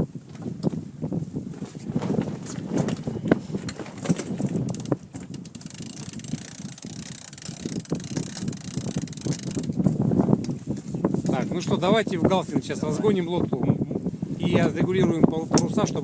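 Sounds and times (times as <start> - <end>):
wind and water rumble: 0.0 - 16.0
deck gear clicking and knocking: 2.1 - 9.8.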